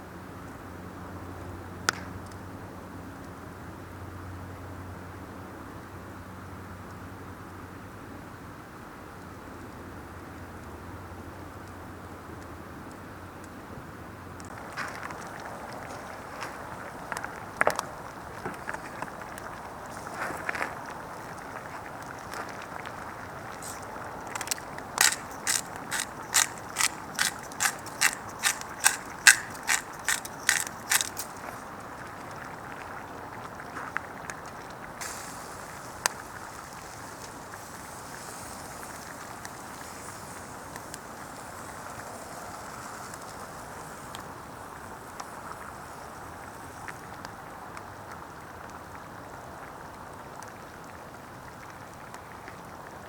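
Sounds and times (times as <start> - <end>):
ratcheting clicks: 23.6 - 31.5
steady hiss: 35.0 - 47.1.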